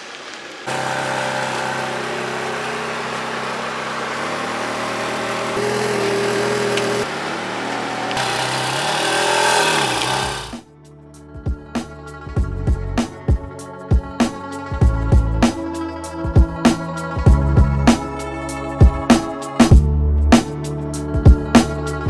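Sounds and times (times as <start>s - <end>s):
car engine running at low revs: 0.7s - 10.6s.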